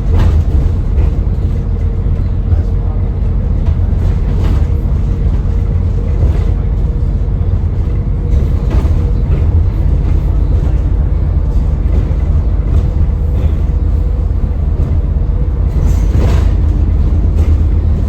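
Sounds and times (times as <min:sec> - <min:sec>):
bus engine rumble: 0:00.0 - 0:18.0.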